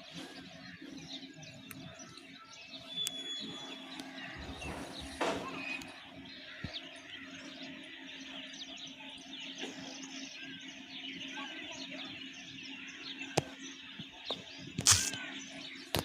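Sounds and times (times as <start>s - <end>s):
small birds chirping: 0.0s - 16.0s
sharp clicks: 14.3s - 15.2s.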